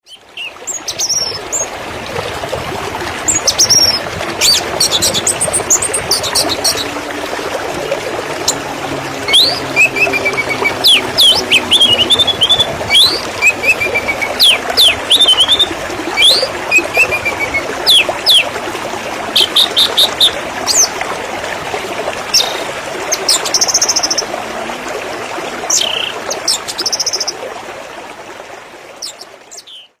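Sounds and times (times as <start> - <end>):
running water: 0.0 - 30.0
birds chirping and singing: 9.3 - 18.4.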